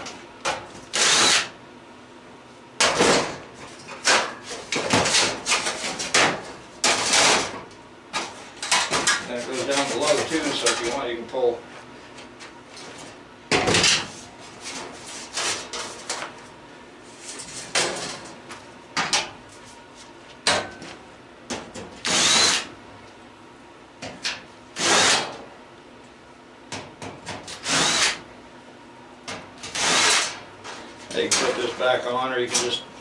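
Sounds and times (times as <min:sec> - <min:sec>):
harsh metal bursts: 0:24.8 - 0:25.3, 0:29.7 - 0:30.4.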